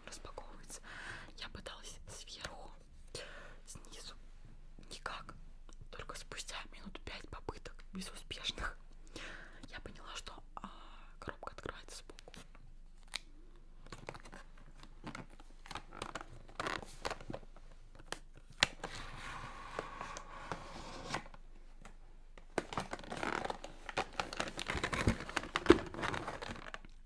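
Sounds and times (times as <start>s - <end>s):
packaging crinkling and tearing: 13.0s - 19.1s, 22.4s - 27.0s.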